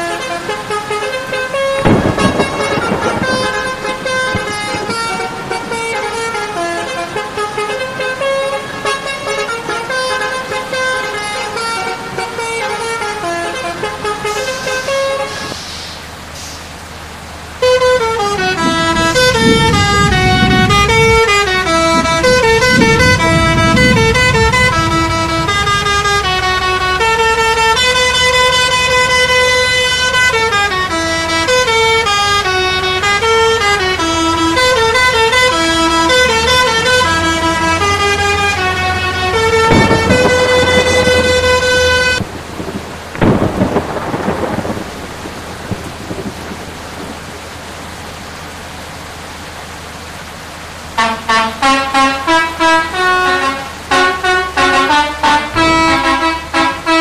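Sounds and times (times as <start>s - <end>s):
multi-tone musical bus horn: 0.0s - 16.7s, 17.6s - 42.3s, 50.8s - 57.0s
low rumble: 18.5s - 27.5s.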